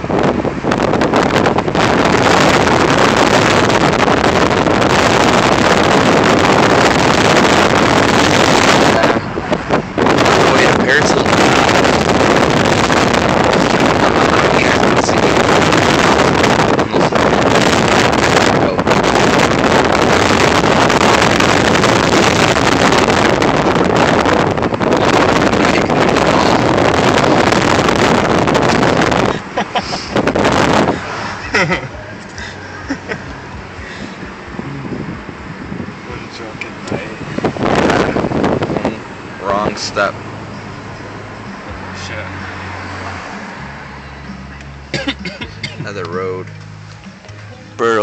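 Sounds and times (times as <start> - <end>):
wind rushing over microphone: 0.0 - 44.0
road and engine noise: 0.0 - 48.0.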